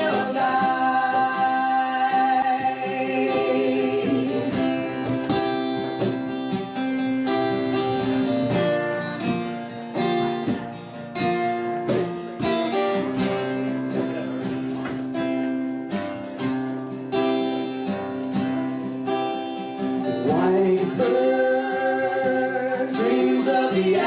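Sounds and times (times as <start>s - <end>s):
person singing: 0.0s - 5.6s, 20.1s - 24.0s
acoustic guitar strumming: 0.0s - 24.0s.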